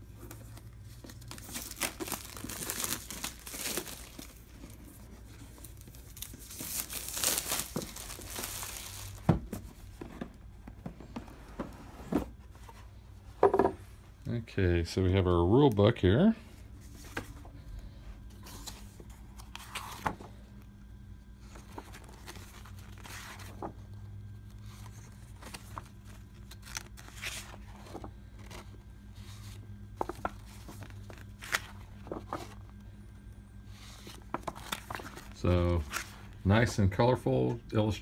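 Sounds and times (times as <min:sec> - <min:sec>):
paper pages rustling: 0:00.0 - 0:10.2, 0:18.4 - 0:20.3, 0:21.4 - 0:32.8, 0:33.7 - 0:36.7
steady low hum: 0:00.0 - 0:38.0.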